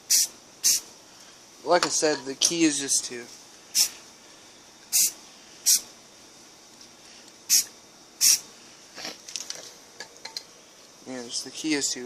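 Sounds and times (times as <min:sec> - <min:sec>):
spray paint can hissing: 0:00.0 - 0:00.9, 0:03.7 - 0:04.0, 0:04.9 - 0:05.9, 0:07.5 - 0:08.5.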